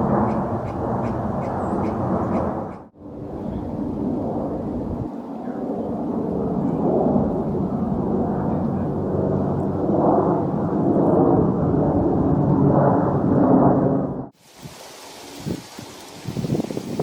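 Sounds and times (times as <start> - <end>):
wind noise on microphone: 0.0 - 17.0.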